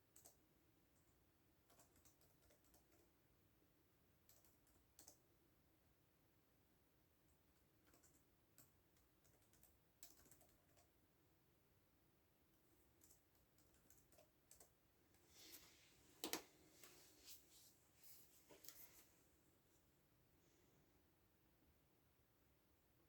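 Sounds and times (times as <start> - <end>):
keyboard typing: 0.0 - 3.2, 4.2 - 5.3, 7.3 - 11.0, 12.8 - 14.8.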